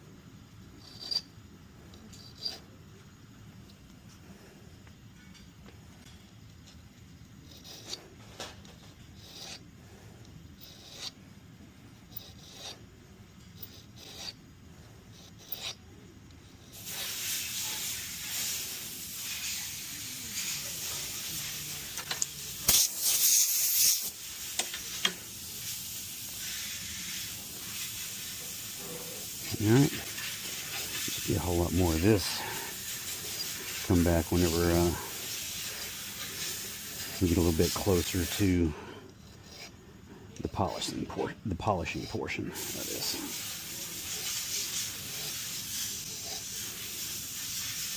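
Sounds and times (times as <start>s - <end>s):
file rasping on steel: 7.4s - 9.7s, 10.6s - 11.2s, 12.0s - 14.4s, 15.0s - 15.8s, 26.4s - 47.9s.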